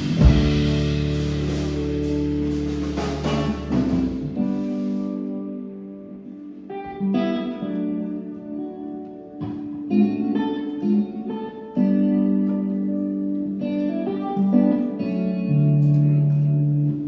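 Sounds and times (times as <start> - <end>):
rock band chord with drum hit: 0.0 - 4.8
guitar picking single notes: 0.0 - 17.0.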